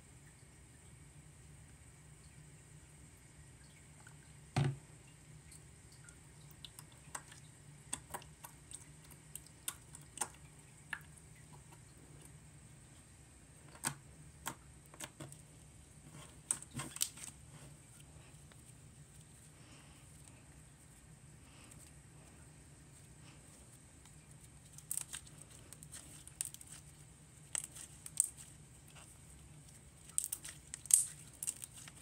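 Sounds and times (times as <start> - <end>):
thump: 4.6 - 4.8
slime squished by hand: 16.2 - 17.4, 24.0 - 32.0.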